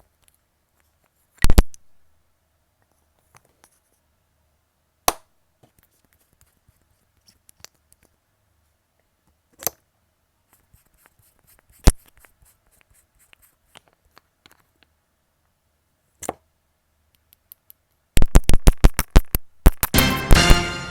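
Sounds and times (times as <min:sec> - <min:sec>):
sharp clicks: 0:17.2 - 0:20.0
rapid series of hits: 0:18.2 - 0:20.9.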